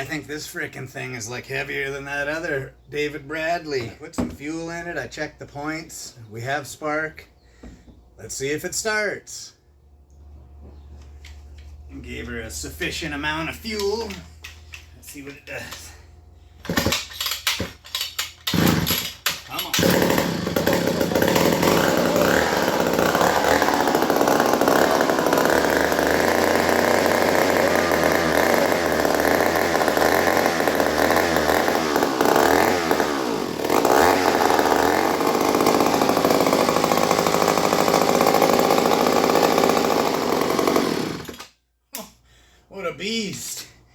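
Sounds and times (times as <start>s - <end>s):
chainsaw starting and running: 18.2s - 41.6s.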